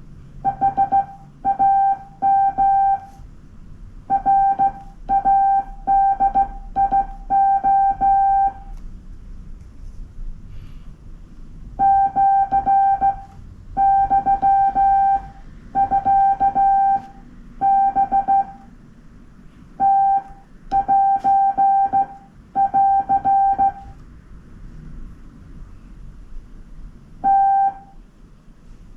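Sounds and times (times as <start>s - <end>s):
morse code beeps: 0.4s - 3.2s, 4.1s - 8.7s, 11.8s - 18.7s, 19.8s - 24.0s, 27.2s - 28.0s.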